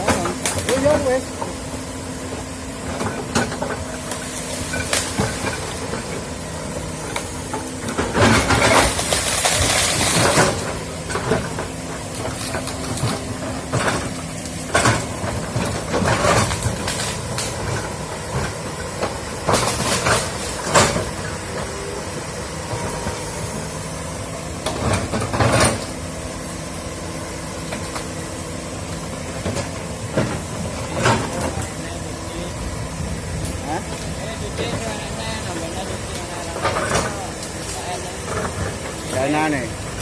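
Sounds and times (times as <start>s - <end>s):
excavator diesel engine running: 0.0s - 40.0s.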